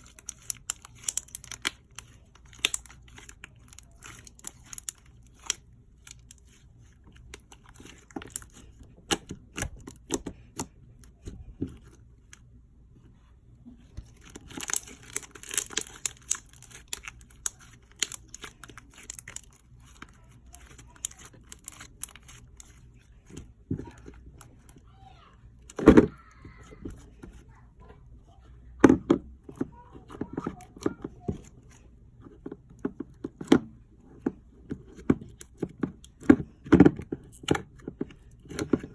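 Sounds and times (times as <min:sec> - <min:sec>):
slime crackling and popping: 0:00.0 - 0:06.6, 0:14.0 - 0:22.8.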